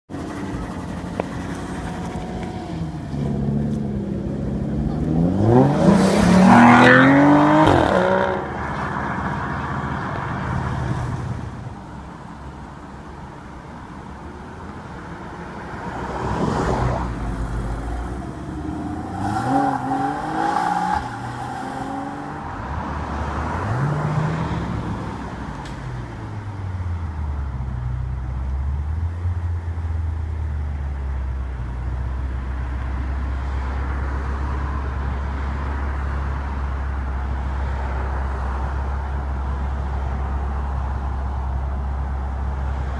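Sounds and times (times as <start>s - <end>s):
engine idling: 0.1s - 3.2s
car engines revving: 0.1s - 42.9s.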